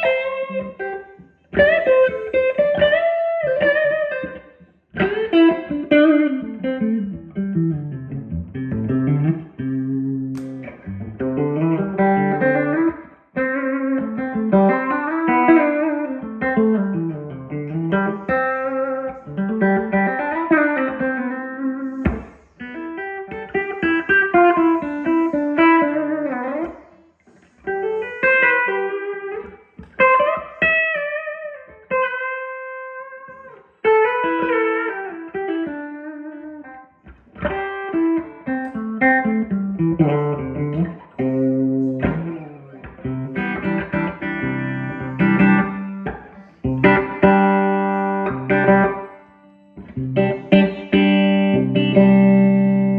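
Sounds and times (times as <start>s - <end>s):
electric guitar playing: 0.0s - 52.9s.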